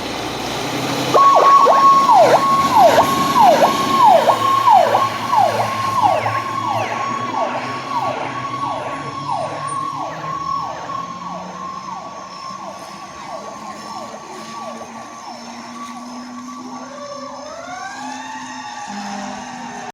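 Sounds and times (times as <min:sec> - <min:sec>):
truck engine running: 0:00.0 - 0:16.3
fire engine sirens: 0:00.0 - 0:19.9.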